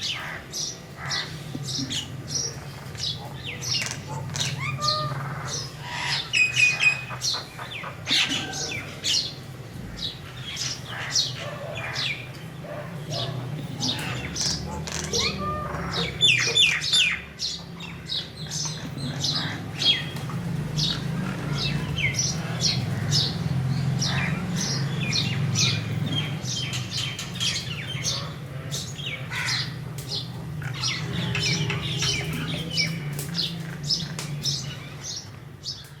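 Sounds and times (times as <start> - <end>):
crows cawing: 0.0 - 1.4, 3.7 - 9.1, 10.6 - 12.2, 13.9 - 17.2, 29.2 - 29.9.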